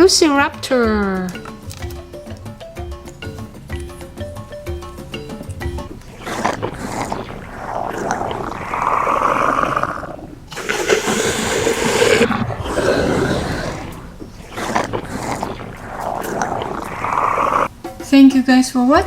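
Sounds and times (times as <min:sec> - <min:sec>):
dinosaur roars: 0:05.9 - 0:17.7.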